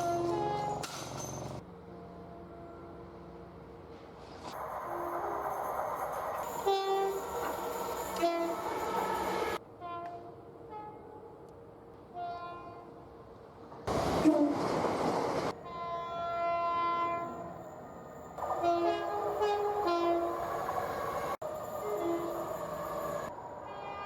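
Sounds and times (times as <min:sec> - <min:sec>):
train horn blasts: 0:00.0 - 0:00.8, 0:06.6 - 0:07.3, 0:08.1 - 0:11.4, 0:12.1 - 0:13.0, 0:15.6 - 0:17.5, 0:18.4 - 0:20.4, 0:21.8 - 0:22.4, 0:23.6 - 0:24.0.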